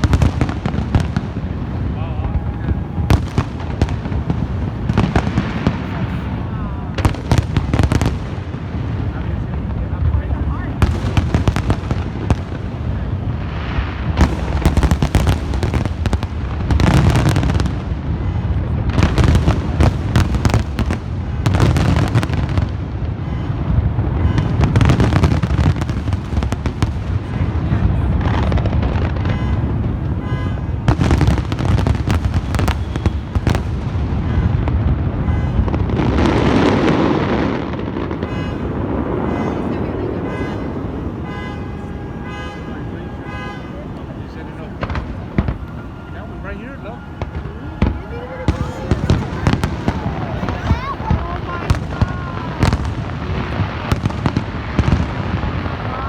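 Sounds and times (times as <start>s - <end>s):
deep fireworks booming: 0.0s - 56.0s
fireworks crackling and banging: 0.0s - 56.0s.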